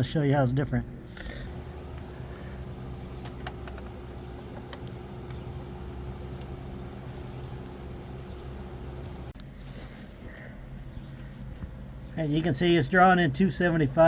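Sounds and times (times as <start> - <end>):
electric fans humming: 0.0 - 10.5
faint steady whine: 0.0 - 10.5.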